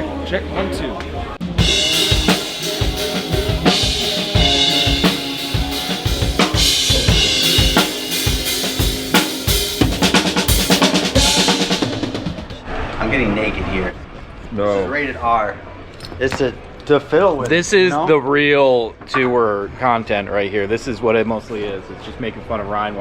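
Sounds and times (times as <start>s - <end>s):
band instruments: 1.4s - 12.6s
drum kit played hard: 1.4s - 12.7s.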